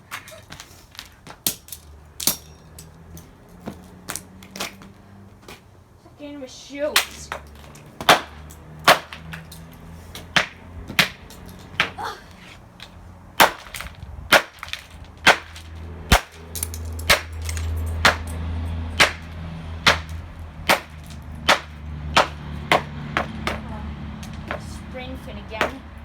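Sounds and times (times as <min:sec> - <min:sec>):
blows cracking plastic casing: 0:12.6 - 0:17.7.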